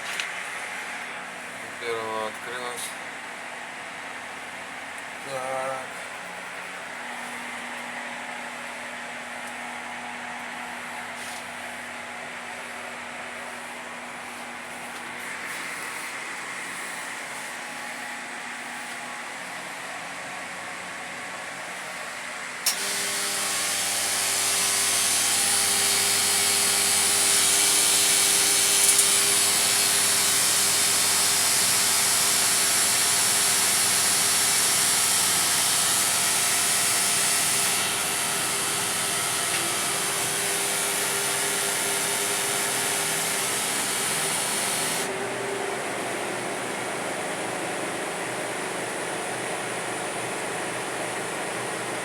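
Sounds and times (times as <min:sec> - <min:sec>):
machine running with loud hiss: 0:10.6 - 0:52.0.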